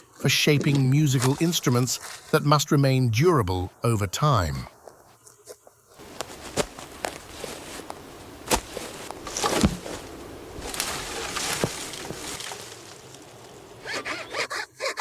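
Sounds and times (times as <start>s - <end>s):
knocks and rustling: 6.0s - 13.2s.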